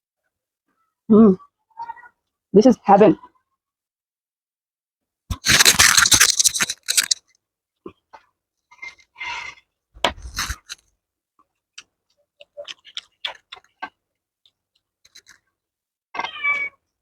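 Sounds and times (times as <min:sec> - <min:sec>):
chewing: 0:05.3 - 0:07.2, 0:11.4 - 0:15.5
food handling clicks and scrapes: 0:05.3 - 0:07.2, 0:10.0 - 0:10.8, 0:11.8 - 0:15.5.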